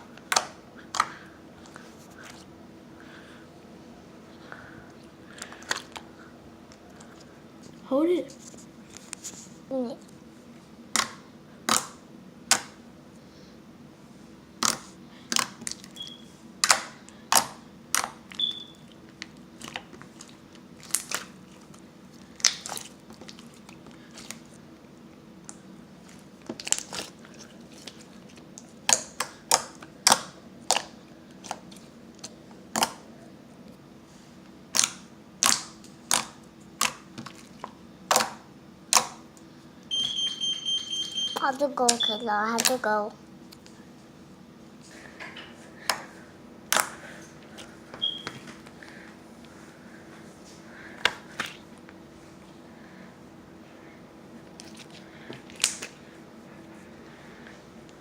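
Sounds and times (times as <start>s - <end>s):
slime popping and clicking: 34.7s - 37.0s.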